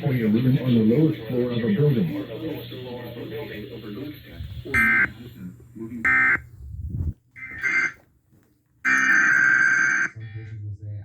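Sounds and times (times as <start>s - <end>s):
harsh electronic warbling tones: 7.4s - 8.0s, 8.9s - 10.1s.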